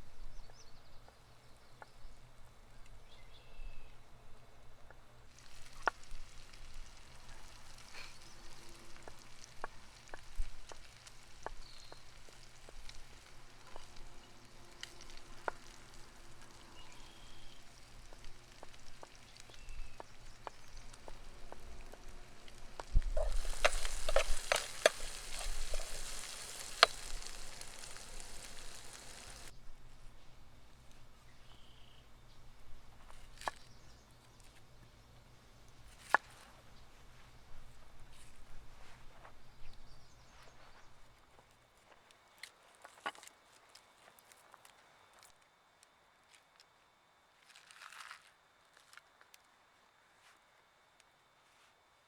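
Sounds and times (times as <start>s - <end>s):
food sizzling in hot fat: 5.3s - 29.5s
stirring clicks: 5.4s - 29.5s.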